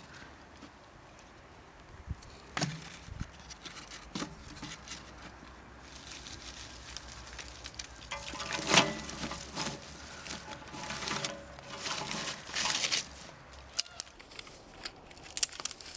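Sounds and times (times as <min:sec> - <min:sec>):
objects being handled: 0:02.2 - 0:14.2
loud clatter: 0:08.1 - 0:13.7.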